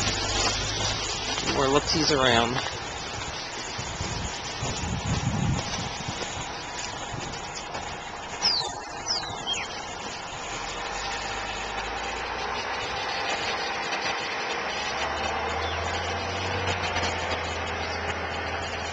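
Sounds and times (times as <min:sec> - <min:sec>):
vehicle engine running: 0:00.0 - 0:18.9
high-pitched squeals: 0:08.2 - 0:18.9.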